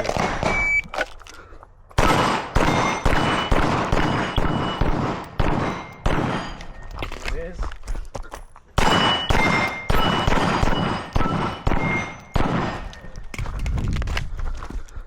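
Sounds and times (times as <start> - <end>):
pistol shots echoing: 2.0 - 6.8, 8.8 - 13.1
bullets ringing steel targets: 2.0 - 7.2, 8.8 - 13.3.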